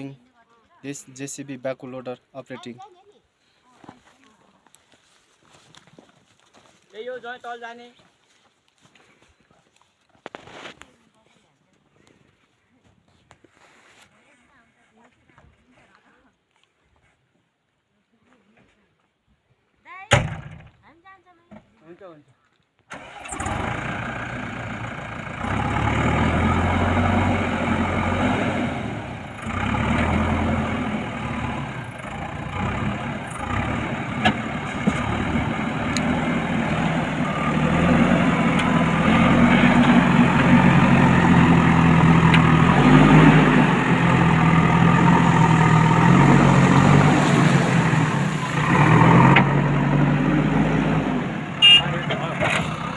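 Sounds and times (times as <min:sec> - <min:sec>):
backhoe diesel engine running: 0:22.9 - 0:52.9.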